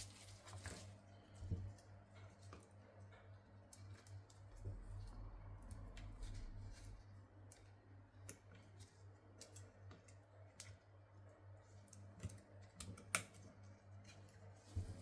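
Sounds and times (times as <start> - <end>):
steady low hum: 3.1 - 8.4.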